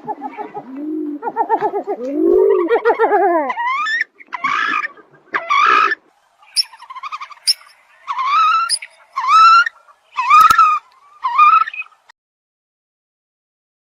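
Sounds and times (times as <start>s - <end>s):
coots nasal calls: 0.0s - 12.1s
faint high chirps and clicks: 6.5s - 7.8s, 8.4s - 9.6s.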